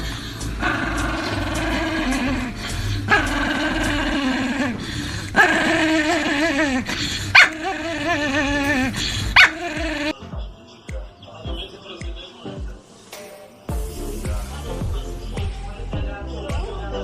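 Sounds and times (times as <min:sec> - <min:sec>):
dog warbling calls: 0:05.4 - 0:10.1.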